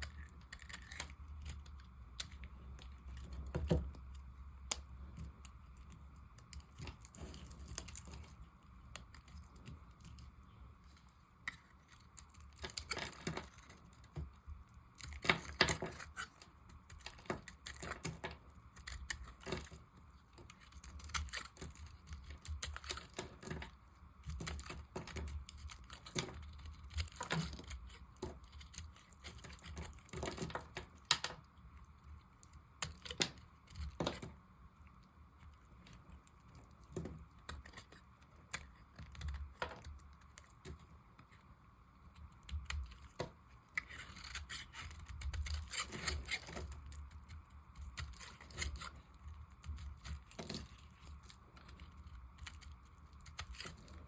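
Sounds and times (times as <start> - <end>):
knife cutting dry soap: 0.0 - 10.3, 14.9 - 31.4, 42.4 - 54.0.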